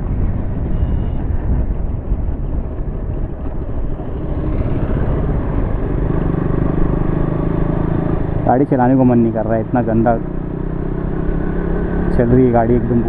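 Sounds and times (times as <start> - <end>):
wind noise on microphone: 0.0 - 7.3
motorcycle engine running: 0.0 - 13.0.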